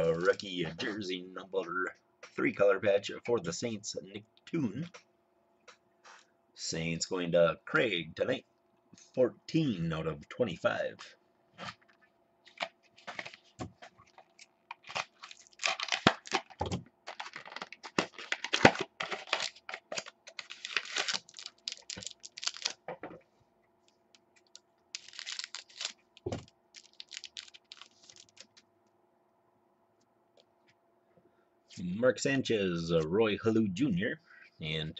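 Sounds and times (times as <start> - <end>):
wrapper crinkling and tearing: 12.5 - 22.8, 24.4 - 28.6.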